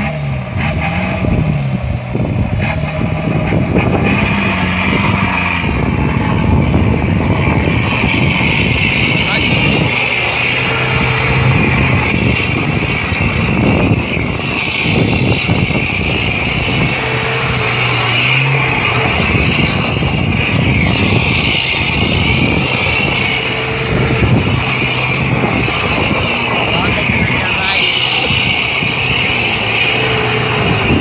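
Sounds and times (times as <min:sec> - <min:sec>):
vehicle engine and road noise: 0:00.0 - 0:31.0.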